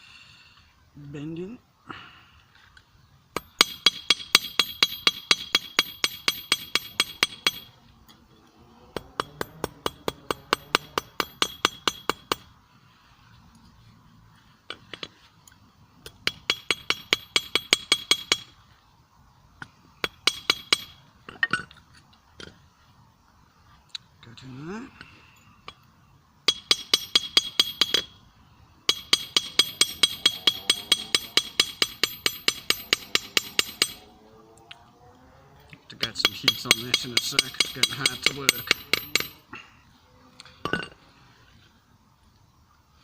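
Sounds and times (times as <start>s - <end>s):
hammer striking metal on anvil: 3.4s - 7.7s, 9.0s - 12.5s, 16.0s - 18.5s, 26.5s - 28.1s, 28.9s - 34.1s, 36.2s - 39.4s.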